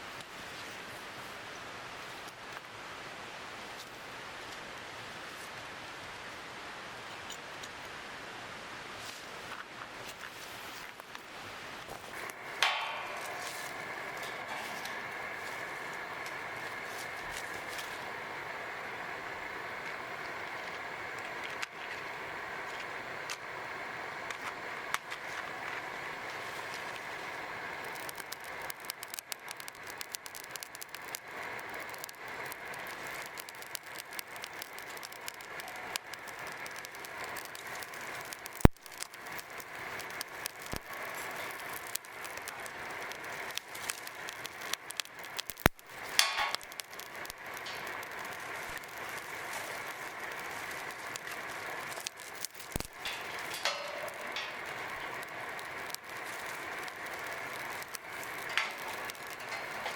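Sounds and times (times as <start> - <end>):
steady hiss: 0.0 - 59.9
sharp knocks: 12.6 - 13.4.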